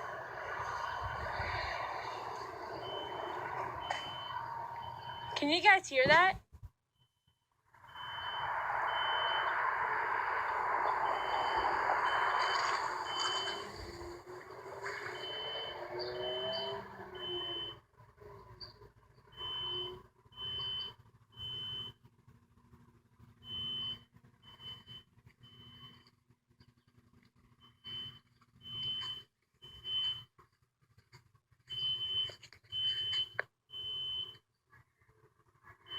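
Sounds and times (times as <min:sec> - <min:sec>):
vehicle passing: 0:00.0 - 0:05.4, 0:07.8 - 0:17.7
fire alarm high beeps: 0:02.8 - 0:05.5, 0:07.0 - 0:09.6, 0:15.2 - 0:17.8, 0:19.3 - 0:22.0, 0:23.4 - 0:26.0, 0:27.6 - 0:30.3, 0:31.7 - 0:34.4.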